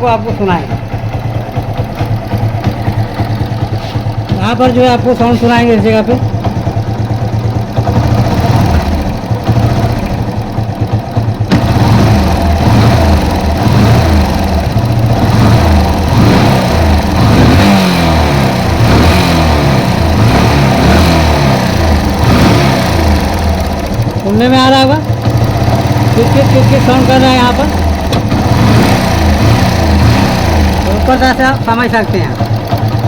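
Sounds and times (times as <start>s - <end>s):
motorcycle engine running: 0.0s - 33.0s.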